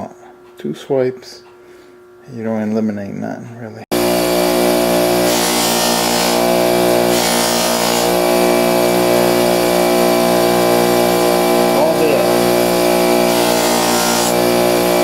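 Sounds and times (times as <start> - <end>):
belt grinder humming: 3.9 - 15.0.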